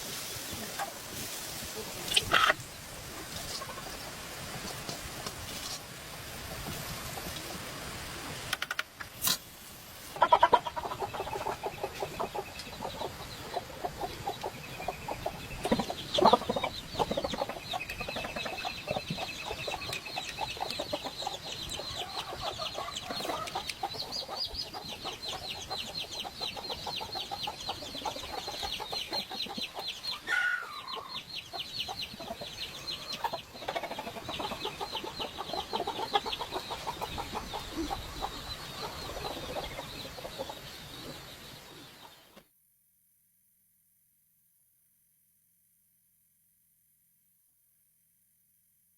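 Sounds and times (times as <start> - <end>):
chickens clucking: 0.0 - 5.8, 10.0 - 42.4
chicken falling call: 30.3 - 30.9.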